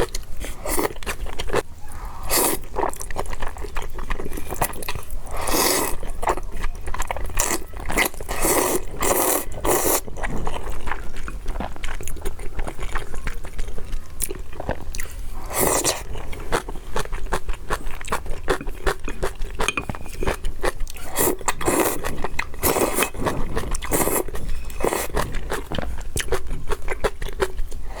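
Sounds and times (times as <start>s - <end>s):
slurping and biting noodles: 0.5s - 3.6s, 4.2s - 6.4s, 7.0s - 11.0s, 15.0s - 17.1s, 21.0s - 27.5s
chewing with wet mouth clicks: 2.3s - 27.9s.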